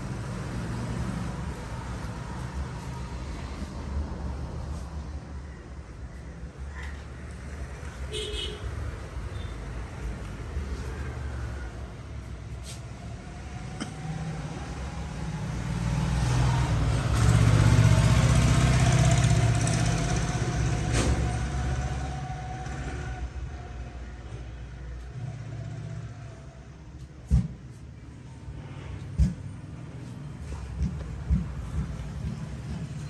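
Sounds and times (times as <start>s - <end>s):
large vehicle passing: 0.0s - 5.8s, 8.7s - 23.5s.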